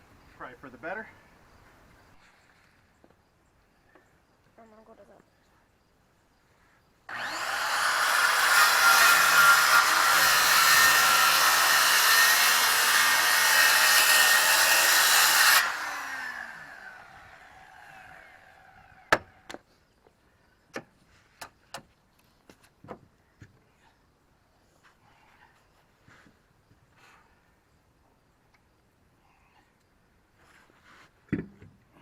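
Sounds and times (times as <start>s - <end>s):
power saw cutting wood: 7.1s - 19.4s.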